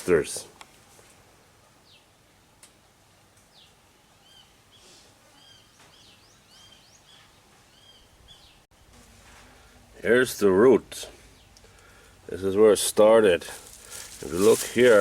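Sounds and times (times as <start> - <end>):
bird chirping: 5.4 - 8.6.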